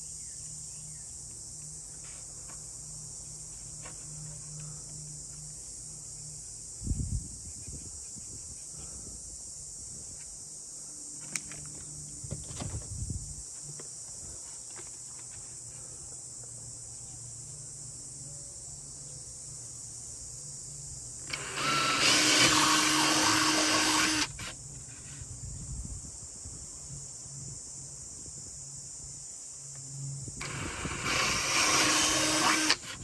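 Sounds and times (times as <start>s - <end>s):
handheld power tool running: 21.2s - 24.6s, 30.4s - 33.0s.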